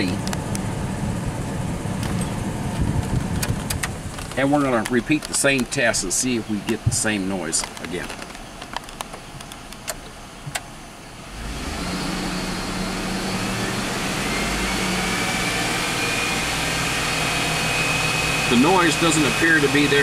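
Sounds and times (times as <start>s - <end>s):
pickup engine revving: 10.5s - 20.0s
thin engine whine: 11.0s - 20.0s.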